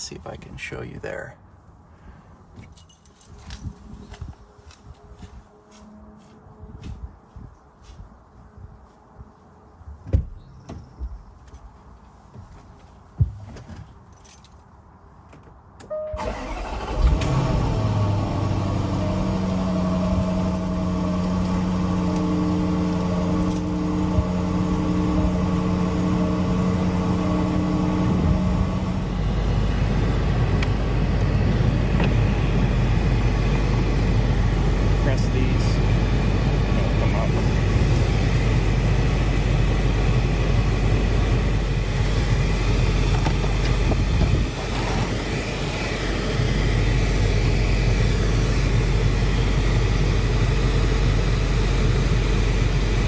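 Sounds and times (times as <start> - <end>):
car engine idling: 16.2 - 53.0.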